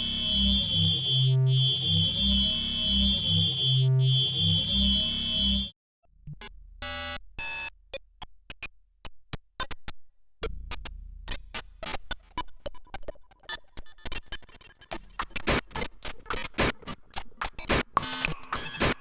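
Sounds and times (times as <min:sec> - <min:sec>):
synthesizer sharp clicks and bursts: 0:14.9 - 0:19.0.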